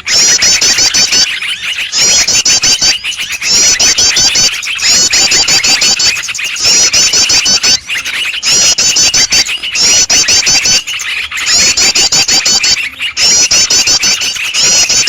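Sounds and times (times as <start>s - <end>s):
fast high repeated chirps: 0.0s - 15.0s
songbirds chattering: 0.0s - 15.0s.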